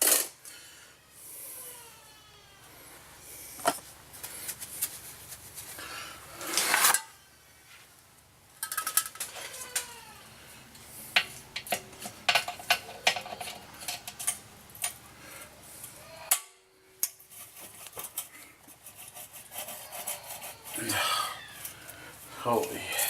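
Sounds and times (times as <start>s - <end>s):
metal parts clinking and scraping: 8.6s - 9.9s.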